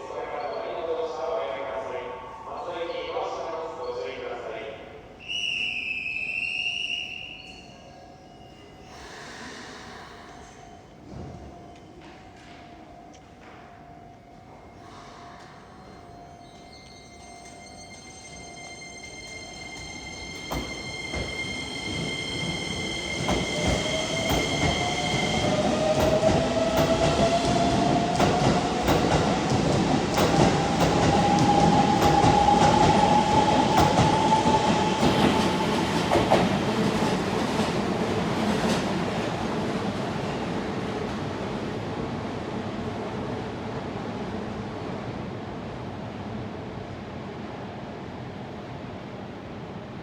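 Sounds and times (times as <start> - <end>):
steady high tone: 14.5 - 36.2
train traction motor whine: 18.7 - 35.8.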